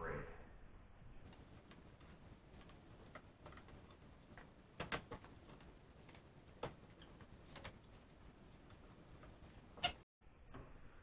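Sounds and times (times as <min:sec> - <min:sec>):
tape crackling and clicking: 0:01.3 - 0:10.0.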